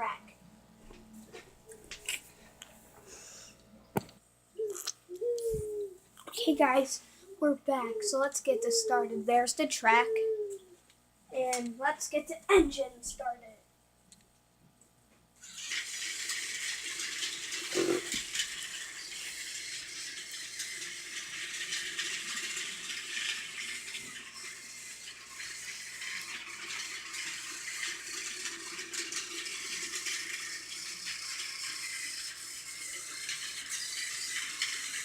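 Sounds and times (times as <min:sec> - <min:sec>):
toy train rattling whir: 0:15.4 - 0:35.0.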